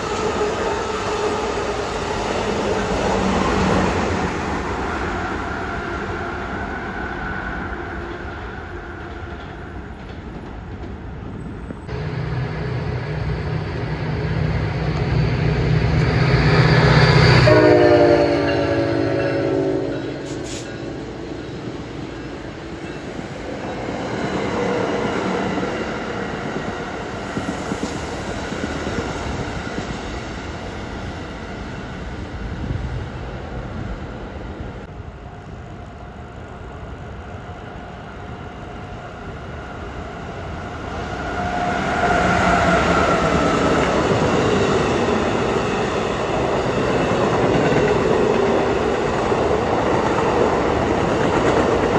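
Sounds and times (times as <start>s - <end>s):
train passing: 0.0s - 51.9s
train horn chord: 16.9s - 21.2s.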